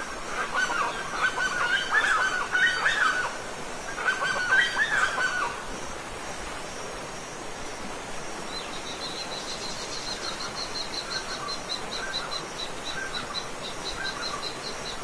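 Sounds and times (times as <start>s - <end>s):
waterfall rushing: 0.0s - 10.5s.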